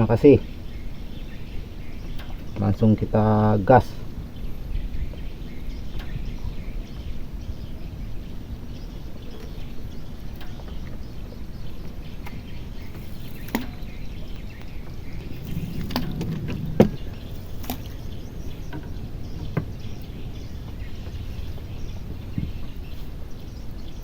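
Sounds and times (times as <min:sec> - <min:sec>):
low outdoor rumble: 0:00.0 - 0:24.0
sharp knocks and clicks: 0:02.0 - 0:03.1, 0:09.2 - 0:22.8.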